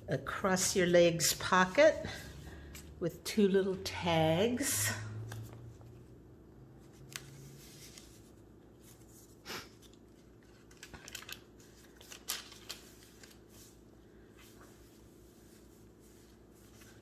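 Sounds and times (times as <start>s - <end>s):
paper and card rustling: 6.8s - 17.0s.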